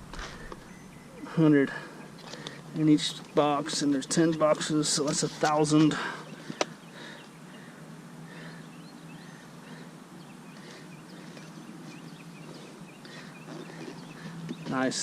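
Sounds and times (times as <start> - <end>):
steady low hum: 0.0 - 15.0
faint bird chirps: 0.3 - 2.2.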